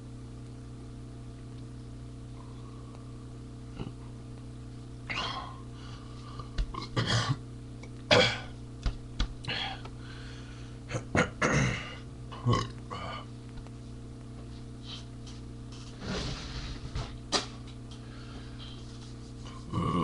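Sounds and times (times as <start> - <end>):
man belching loudly: 10.9 - 13.3, 19.7 - 20.0.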